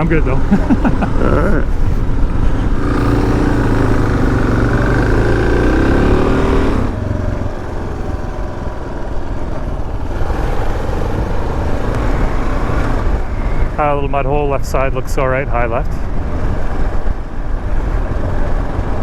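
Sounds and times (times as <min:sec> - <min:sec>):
motorcycle engine revving: 0:00.0 - 0:14.1.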